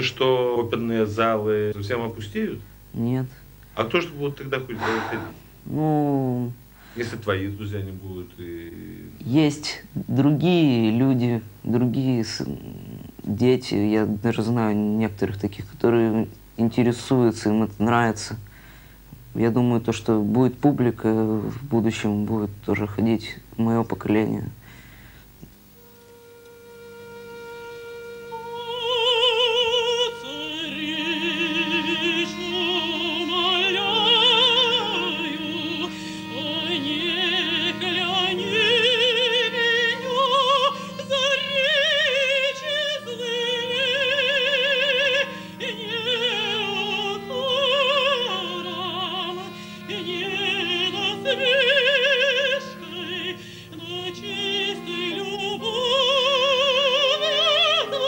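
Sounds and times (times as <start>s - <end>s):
instrumental accompaniment: 25.7s - 58.0s
woman singing operatically: 28.3s - 58.0s.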